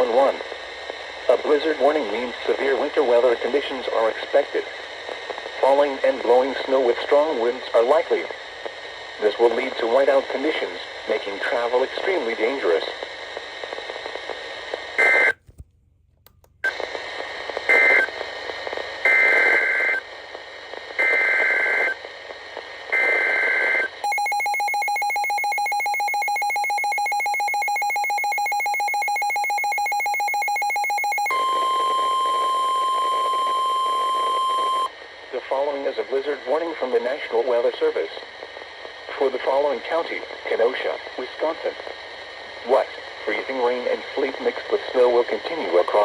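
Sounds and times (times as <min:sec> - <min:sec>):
steady warning alarm tone: 0:23.0 - 0:34.9
pulsing two-tone attention signal: 0:24.1 - 0:34.9.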